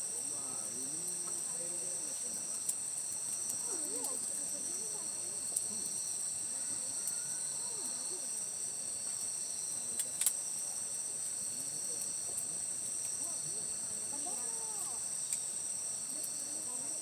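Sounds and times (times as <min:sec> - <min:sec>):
insects chirring: 0:00.0 - 0:17.0
sharp clicks: 0:10.0 - 0:10.4.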